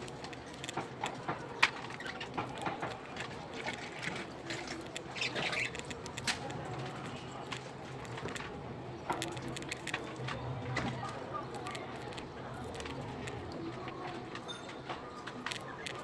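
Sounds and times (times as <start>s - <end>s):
sharp clicks and taps: 0.0s - 16.0s
budgerigars chirping and squawking: 5.1s - 5.9s.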